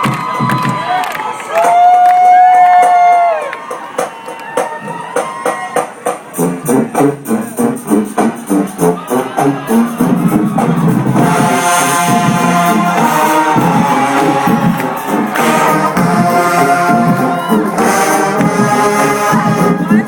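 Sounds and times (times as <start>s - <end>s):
brass sustained chords: 6.4s - 19.9s
marching band drums: 9.4s - 20.0s.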